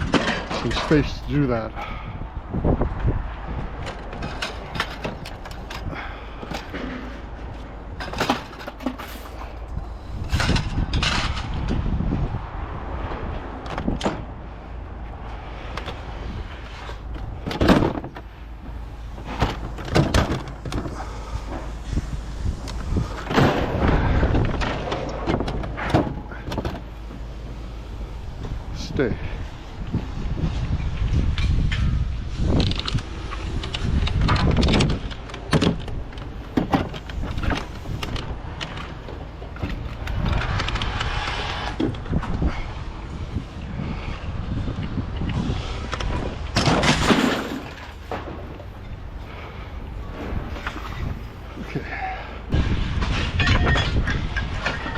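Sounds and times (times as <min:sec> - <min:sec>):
scrap metal knocks and clanks: 0:00.0 - 0:01.4, 0:03.8 - 0:11.8, 0:46.0 - 0:54.9
steady low rumble: 0:00.0 - 0:54.9.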